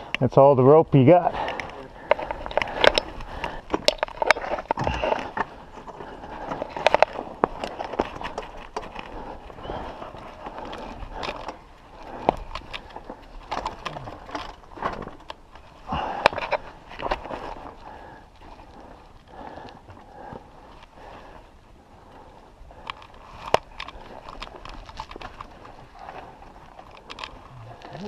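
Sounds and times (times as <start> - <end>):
bike clicking and knocking on rock: 1.4 - 18.6.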